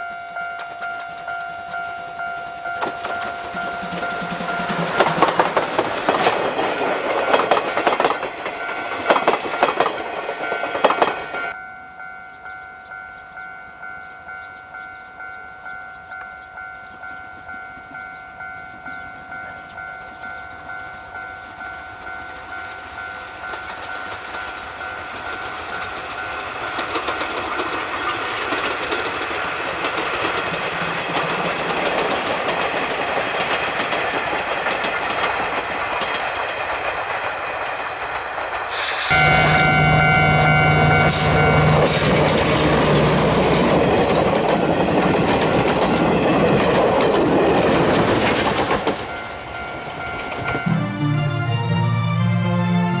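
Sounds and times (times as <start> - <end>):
steady high tone: 0.0 - 28.0, 38.8 - 45.4, 46.0 - 53.0
rhythmic beat of running train: 0.0 - 53.0
steam locomotive hauling train: 0.0 - 53.0.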